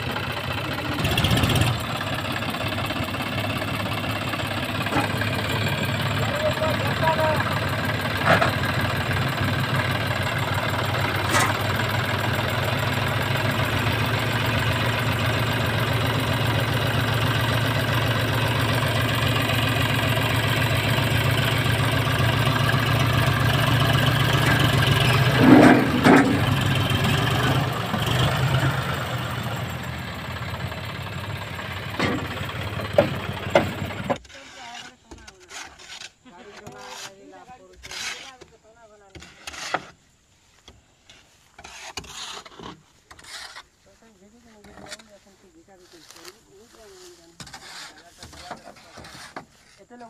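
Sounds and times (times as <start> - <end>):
tractor diesel engine running: 0.0 - 35.3.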